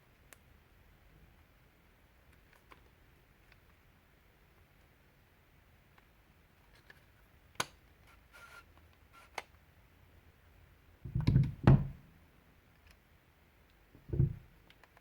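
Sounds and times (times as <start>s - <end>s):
dull knocks on workbench: 14.0s - 14.4s.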